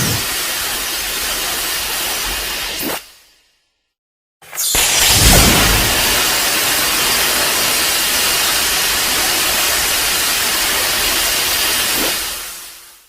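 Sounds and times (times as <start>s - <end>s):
loud rushing hiss: 4.7s - 12.8s.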